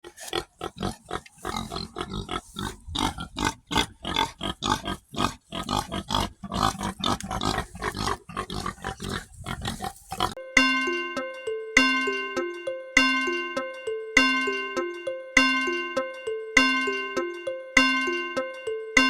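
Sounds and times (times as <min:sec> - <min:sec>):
pigs grunting and oinking: 0:00.0 - 0:10.4.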